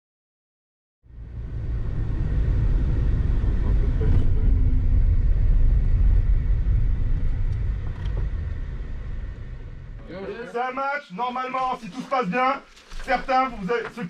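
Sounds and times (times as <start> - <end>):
bus rumbling from inside: 1.1 - 10.5.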